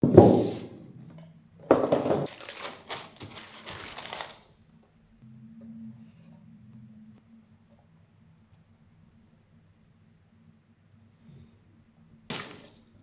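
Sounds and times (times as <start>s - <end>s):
packaging crinkling and rustling: 1.8s - 4.6s
faint low hum: 4.6s - 12.2s.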